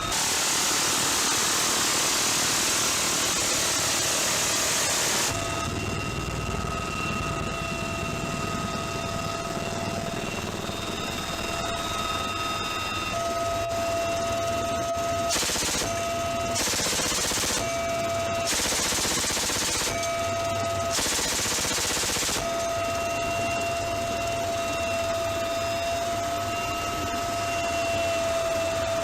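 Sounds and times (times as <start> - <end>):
aircraft engine whine: 0.0 - 29.0
minigun firing bursts: 15.3 - 22.8.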